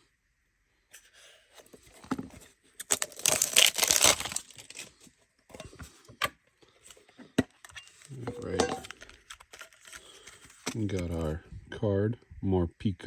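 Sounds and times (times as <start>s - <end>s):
plastic wrapping tearing and crinkling: 2.8s - 4.9s, 8.8s - 10.6s.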